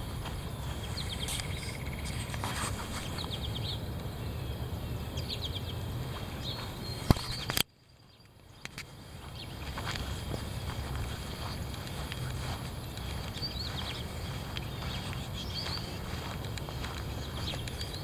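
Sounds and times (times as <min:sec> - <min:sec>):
wind buffeting microphone: 0:00.0 - 0:07.6, 0:08.4 - 0:18.0
birds chirping: 0:00.0 - 0:18.0.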